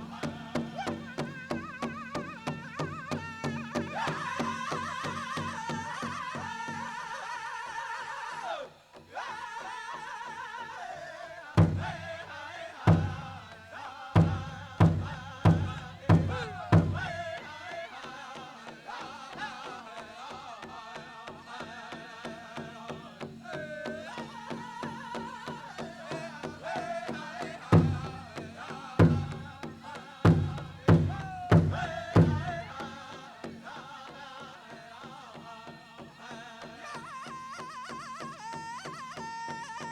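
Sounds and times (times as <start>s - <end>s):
men's drum group singing: 0.0s - 39.9s
big drum beating: 11.6s - 12.2s, 12.9s - 13.4s, 14.2s - 17.3s, 27.8s - 32.8s.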